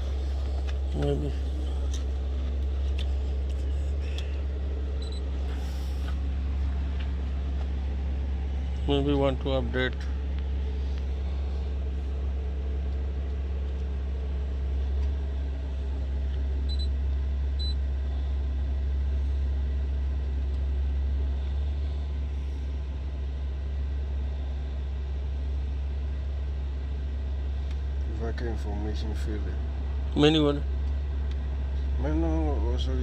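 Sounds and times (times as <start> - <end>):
low rumble of machinery: 0.0 - 33.0.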